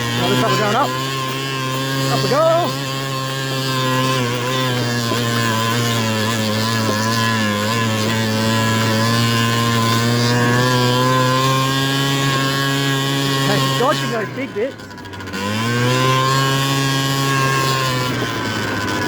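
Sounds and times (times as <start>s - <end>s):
two-stroke scooter engine running hard: 0.0s - 19.0s.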